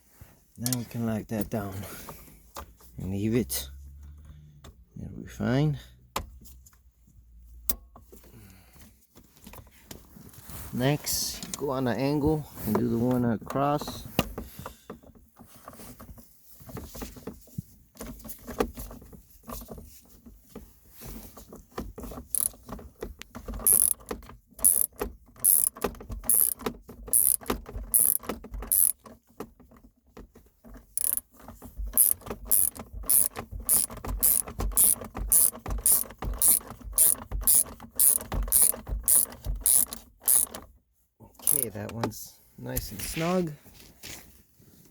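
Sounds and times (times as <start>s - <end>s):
ratchet wrench clicking: 22.2s - 22.6s, 23.6s - 29.0s, 31.0s - 31.3s, 31.9s - 40.6s, 41.4s - 41.7s.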